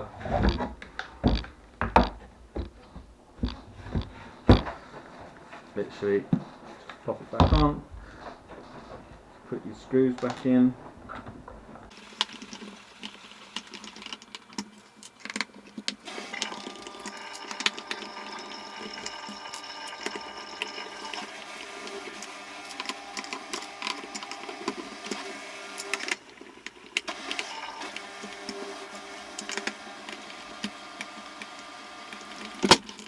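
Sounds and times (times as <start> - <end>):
clicks and knocks of handling: 12.2 - 18.1
electric screwdriver motor running: 15.9 - 33.0.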